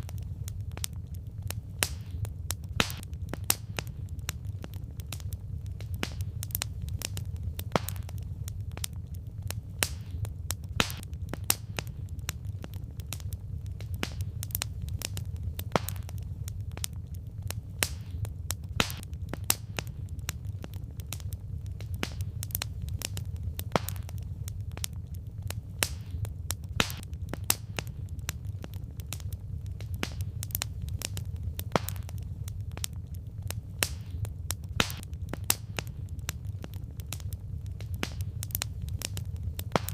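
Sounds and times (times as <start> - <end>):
firewood crackling and popping: 0.0 - 39.9
low rumble of fire: 0.0 - 39.9.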